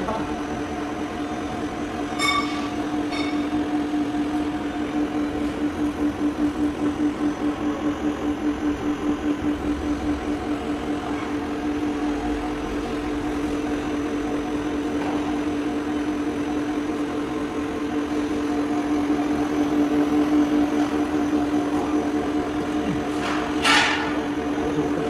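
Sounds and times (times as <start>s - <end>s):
bending machine pulsing hum: 0.0s - 25.0s
short ringing tones: 2.0s - 3.6s.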